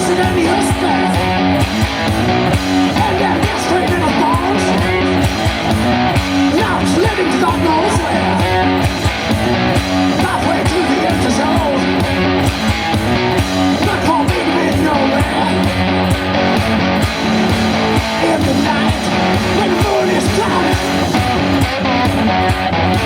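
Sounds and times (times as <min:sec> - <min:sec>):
person singing: 0:00.0 - 0:01.6, 0:02.8 - 0:05.4, 0:06.4 - 0:08.9, 0:10.0 - 0:12.2, 0:13.7 - 0:23.0
live rock music: 0:00.0 - 0:23.0.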